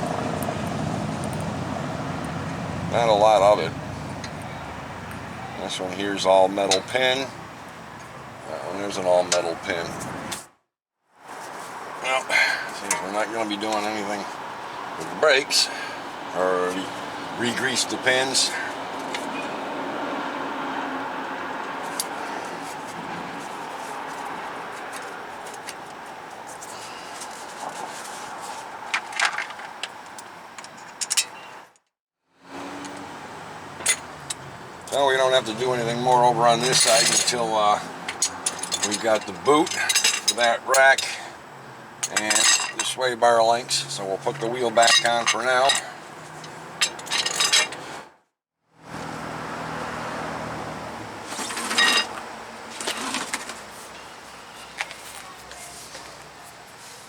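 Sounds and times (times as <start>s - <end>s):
tools clicking and clinking: 38.0s - 41.2s, 44.8s - 47.8s.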